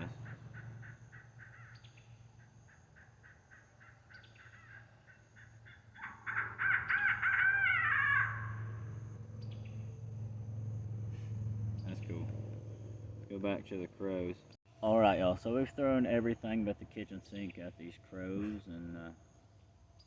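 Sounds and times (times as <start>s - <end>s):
recorded bird calls from speaker: 0.0s - 9.8s, 11.8s - 12.3s.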